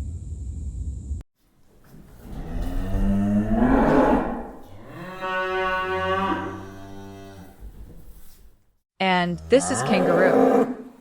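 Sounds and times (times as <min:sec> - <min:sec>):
cow mooing: 0:02.4 - 0:07.6, 0:09.3 - 0:10.9.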